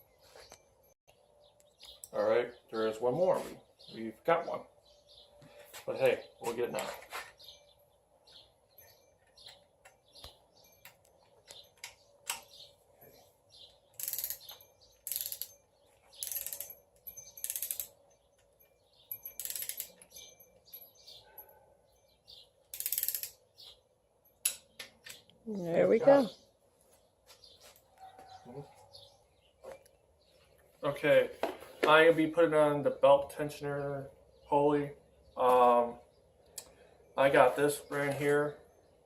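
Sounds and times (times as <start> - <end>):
socket ratchet clicking: 14.0 - 15.6, 16.2 - 18.0, 19.3 - 20.2, 22.7 - 23.4
tools tapping on metal: 14.0 - 21.2, 22.7 - 25.3.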